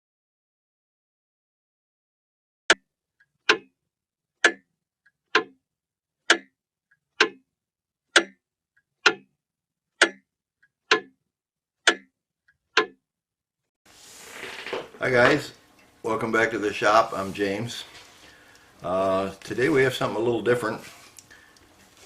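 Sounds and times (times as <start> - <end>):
clock ticking: 2.7 - 3.8, 4.4 - 5.6, 6.2 - 7.5, 8.1 - 11.2, 11.8 - 13.0.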